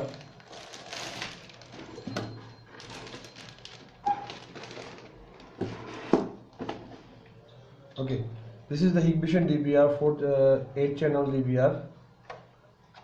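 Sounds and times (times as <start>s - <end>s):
packaging rustling: 0.0s - 6.0s.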